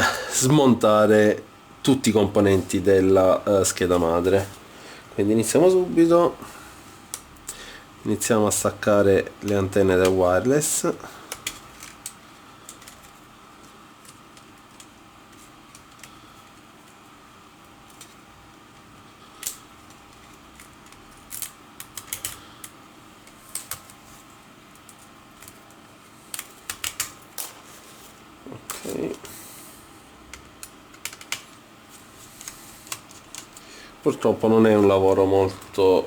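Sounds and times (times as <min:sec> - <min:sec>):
faint steady hum: 0:00.0 - 0:36.0
tool clicking on connectors: 0:30.3 - 0:31.6.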